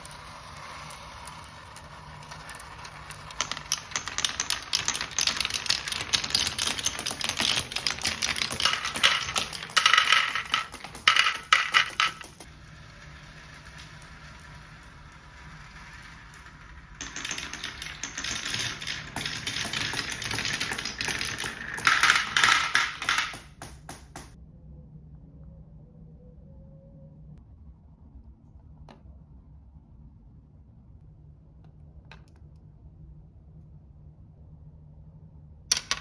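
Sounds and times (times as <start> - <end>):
marbles clattering down wooden track: 0.0 - 24.4, 35.7 - 36.0.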